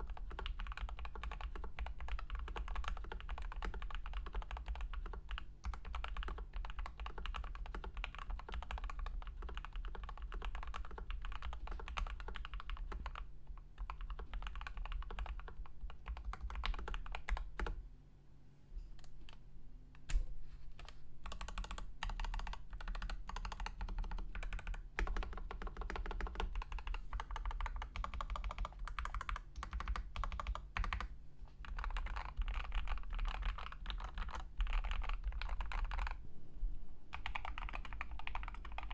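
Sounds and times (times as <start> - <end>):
typing on mechanical keyboard: 0.0 - 17.8, 20.8 - 36.2, 37.1 - 38.9.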